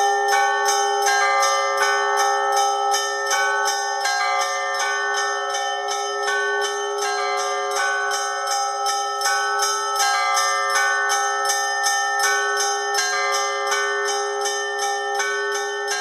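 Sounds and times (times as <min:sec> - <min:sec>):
hum of large bells: 0:00.0 - 0:16.0.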